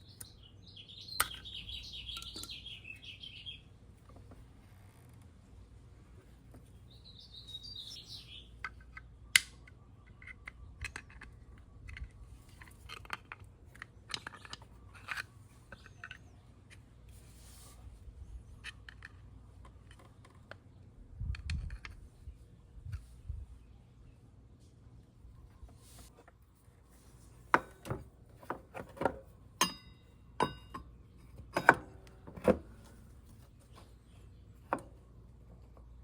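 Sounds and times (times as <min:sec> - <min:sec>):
bird chirping: 0:00.0 - 0:03.8, 0:06.7 - 0:11.5.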